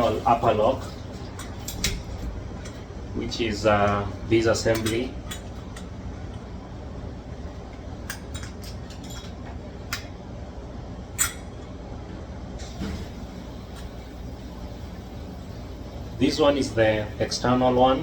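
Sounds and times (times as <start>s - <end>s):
steady low hum: 0.0s - 18.0s
metallic clicks of lock parts: 1.4s - 2.8s, 4.6s - 6.4s, 8.0s - 10.1s, 11.2s - 11.5s.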